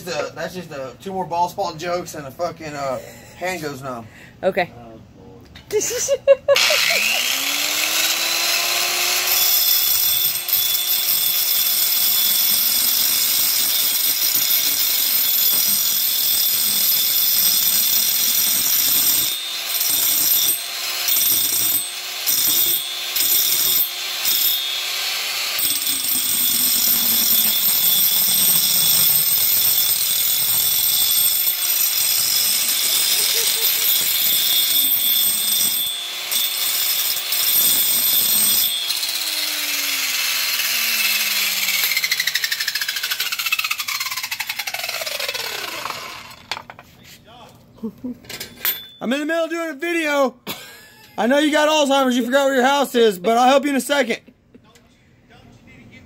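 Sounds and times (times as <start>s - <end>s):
grinding on metal: 6.6s - 46.6s
power tool motor spinning: 6.6s - 46.6s.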